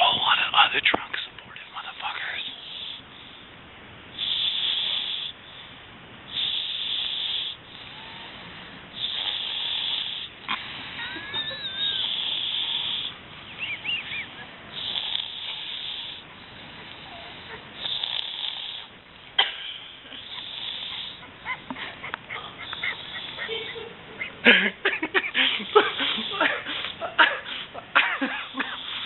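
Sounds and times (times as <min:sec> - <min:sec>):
person snoring: 0:06.3 - 0:13.2, 0:14.7 - 0:16.2, 0:16.9 - 0:18.9.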